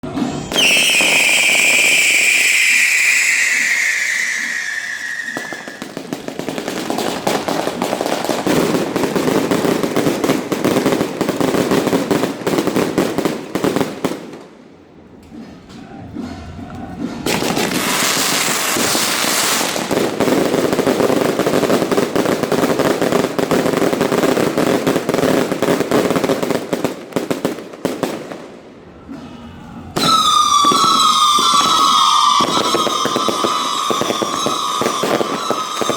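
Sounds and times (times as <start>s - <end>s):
whistling fireworks: 0.0s - 14.6s, 16.3s - 28.5s, 29.9s - 35.9s
firecrackers crackling: 0.0s - 14.8s, 17.2s - 28.8s, 30.0s - 35.9s
hissing firework burst: 0.1s - 11.4s, 30.0s - 35.9s.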